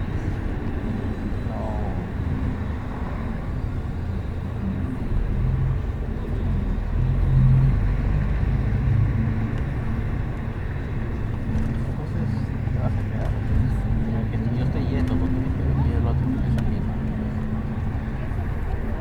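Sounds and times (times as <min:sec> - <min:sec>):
bus engine and road rumble: 0:00.0 - 0:19.0.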